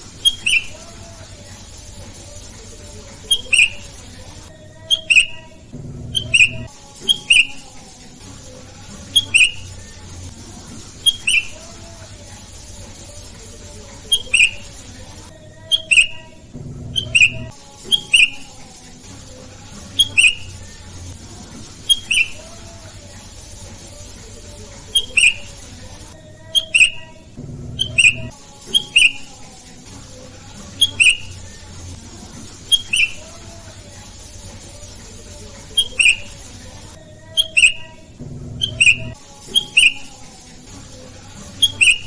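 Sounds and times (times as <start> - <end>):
bird calling sharp paired notes: 0.2 - 0.8, 3.3 - 3.8, 4.9 - 5.6, 6.2 - 7.7, 9.2 - 9.7, 11.0 - 11.6, 14.1 - 14.6, 15.7 - 16.4, 17.0 - 18.5, 20.0 - 20.5, 21.9 - 22.4, 25.0 - 25.5, 26.5 - 27.2, 27.8 - 29.4, 30.8 - 31.3, 32.7 - 33.2, 35.8 - 36.4, 37.4 - 38.0, 38.6 - 40.1, 41.6 - 42.0.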